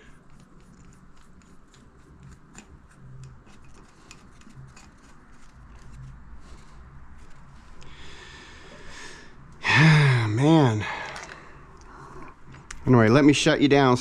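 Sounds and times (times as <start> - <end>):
hand tools clicking and tapping: 0.0 - 6.0.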